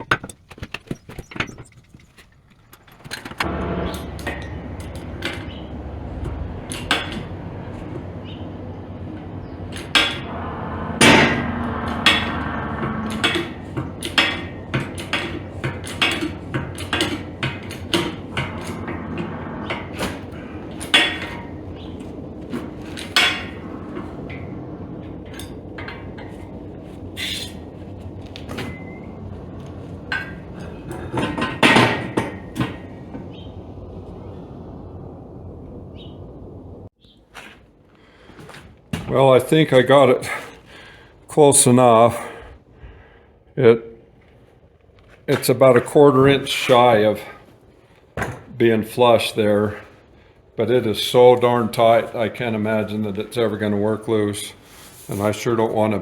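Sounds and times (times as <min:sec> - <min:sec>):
low rushing noise: 0:03.4 - 0:36.9.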